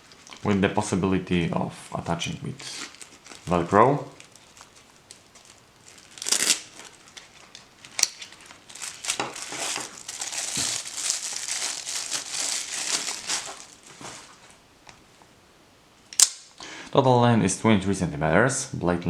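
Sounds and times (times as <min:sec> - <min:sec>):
nylon sheath rustling: 0:02.6 - 0:14.6.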